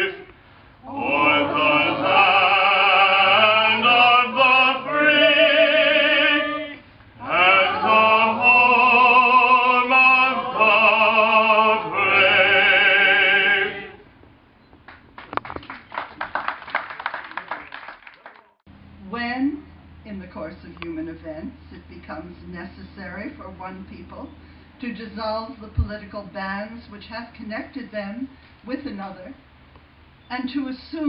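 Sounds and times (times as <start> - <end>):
woman singing operatically: 0.9 - 13.9
people clapping: 14.8 - 18.6.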